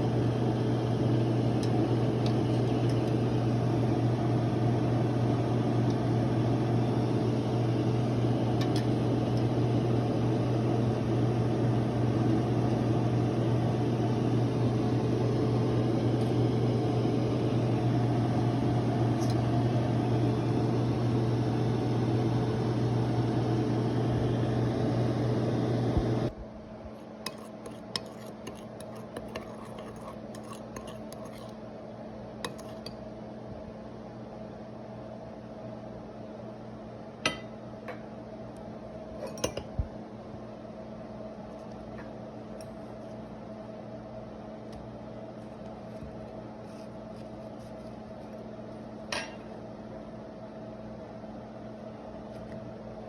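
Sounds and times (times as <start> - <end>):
kitchen appliance motor humming: 27.2 - 31.5.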